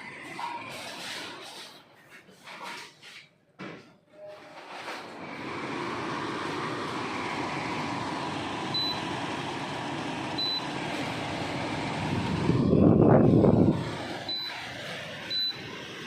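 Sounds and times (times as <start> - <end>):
air conditioner fan whooshing: 4.6 - 16.0.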